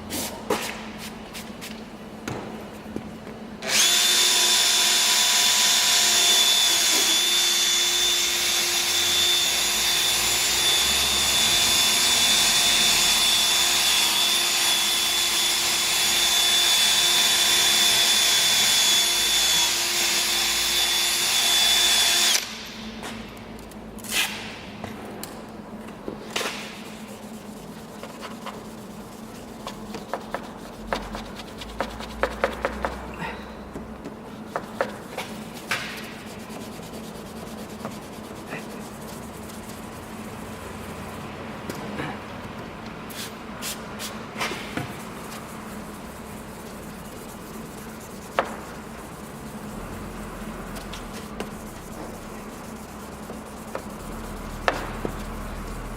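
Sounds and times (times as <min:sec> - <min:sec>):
drill whining: 0:03.7 - 0:07.9
quiet rubbing: 0:45.2 - 0:55.9.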